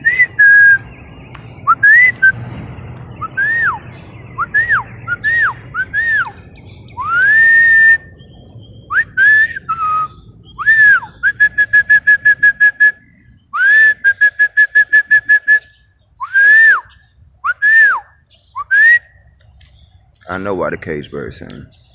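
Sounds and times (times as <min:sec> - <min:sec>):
person whistling: 0:00.0 - 0:00.8, 0:01.7 - 0:02.4, 0:08.9 - 0:13.0, 0:13.6 - 0:15.6, 0:16.2 - 0:18.0, 0:18.6 - 0:19.1.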